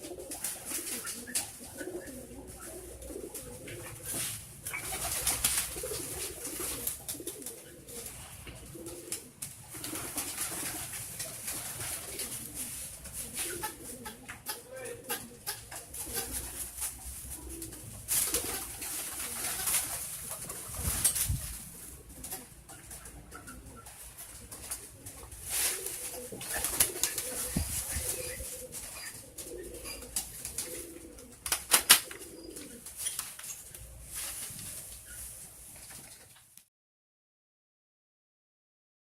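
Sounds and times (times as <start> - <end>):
pigeons cooing: 0.0 - 35.3
wing flaps: 3.1 - 13.6, 16.0 - 21.6, 24.4 - 33.3.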